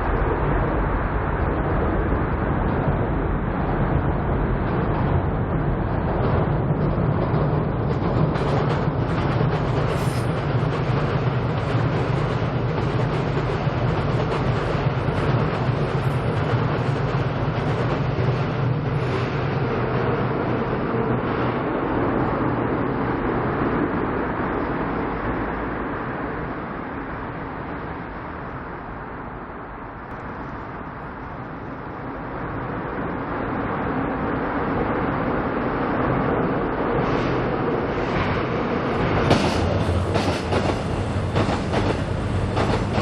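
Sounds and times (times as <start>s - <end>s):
train rumbling over bridge: 0.0s - 43.0s.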